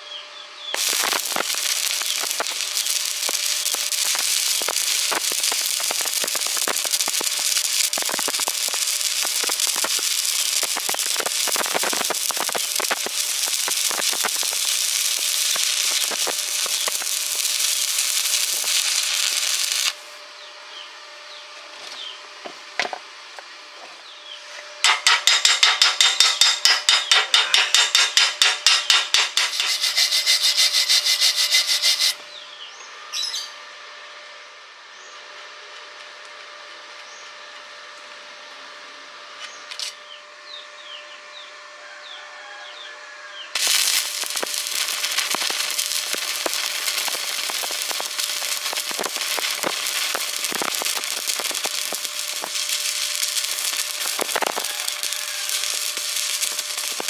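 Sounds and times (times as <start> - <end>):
electric arc welding crackle: 0.7 - 20.2, 24.7 - 32.2, 43.5 - 57.0
rasping strokes on metal: 24.8 - 32.2.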